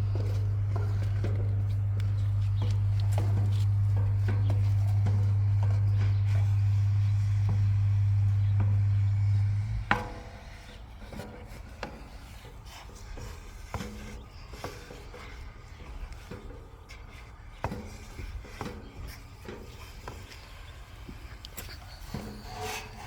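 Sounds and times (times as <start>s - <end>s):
wooden stick scraping a pot: 21.4s - 23.0s.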